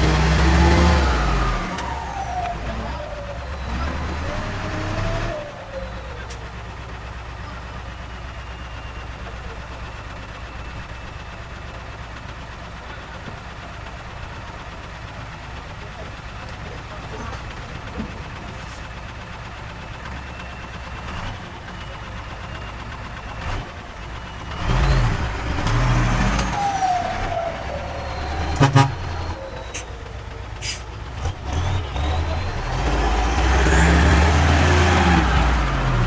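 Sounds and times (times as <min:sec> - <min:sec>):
diesel earthmoving machine running: 0:00.0 - 0:36.0
short squeals: 0:24.2 - 0:31.0.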